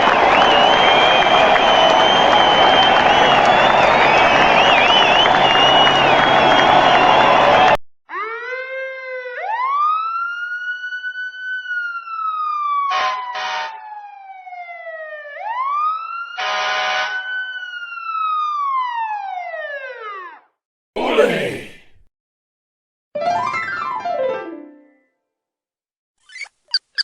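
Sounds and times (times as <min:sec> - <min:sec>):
police siren wailing: 0:08.1 - 0:16.4, 0:17.1 - 0:20.1.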